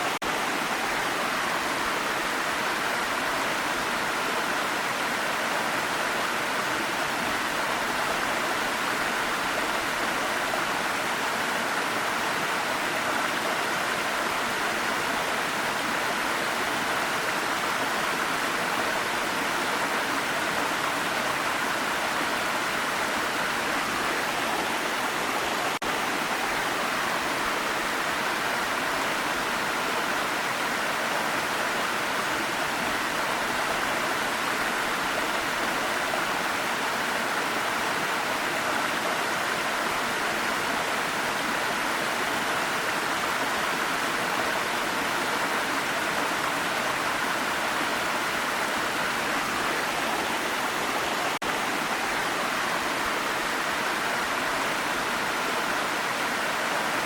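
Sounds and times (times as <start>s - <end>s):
waterfall rushing: 0.0s - 57.0s.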